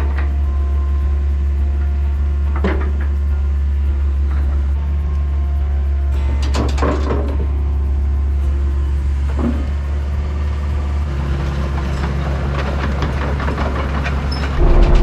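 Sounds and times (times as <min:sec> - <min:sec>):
large engine running: 0:14.6 - 0:15.0.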